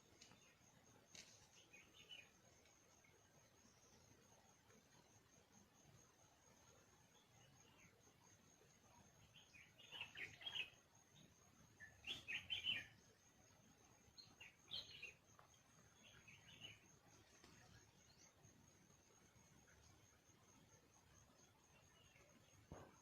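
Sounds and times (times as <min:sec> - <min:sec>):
faint bird calls: 0:11.8 - 0:13.0.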